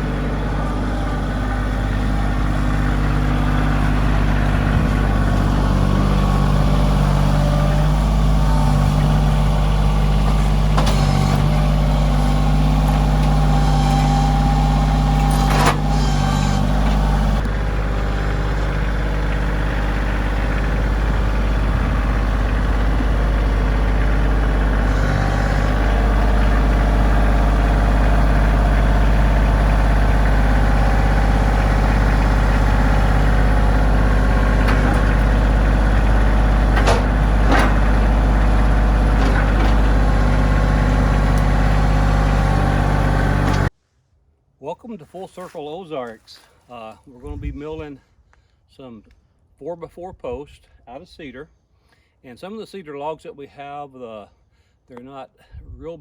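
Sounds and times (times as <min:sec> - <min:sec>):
engine running: 0:00.0 - 0:43.7.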